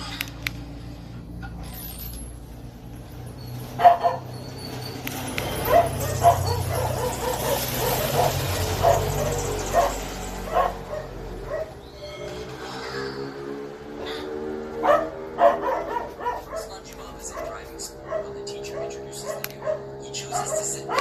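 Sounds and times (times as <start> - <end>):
dog barking: 3.8 - 4.3, 5.6 - 11.8, 14.8 - 21.0.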